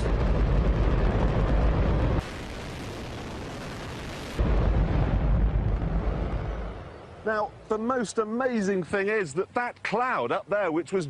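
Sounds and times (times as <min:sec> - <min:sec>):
rocket engine roaring: 0:00.0 - 0:07.3.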